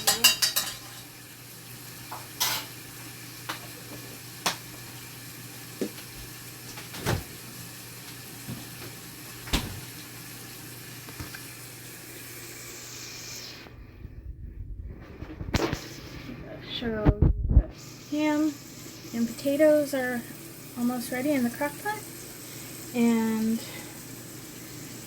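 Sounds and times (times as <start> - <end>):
pots and dishes clinking: 0.0 - 1.2, 2.1 - 2.8
steady hiss: 12.4 - 13.8, 17.7 - 25.0
low hum: 13.7 - 15.6.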